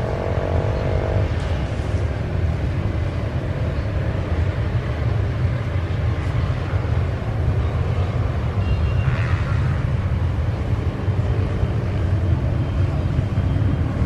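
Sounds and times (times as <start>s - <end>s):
jet engine noise: 0.0s - 14.0s
wind buffeting microphone: 0.0s - 14.0s.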